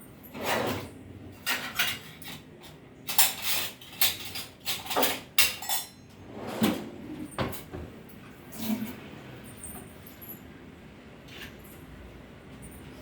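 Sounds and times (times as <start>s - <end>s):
metal kitchenware clattering: 0.3s - 7.7s.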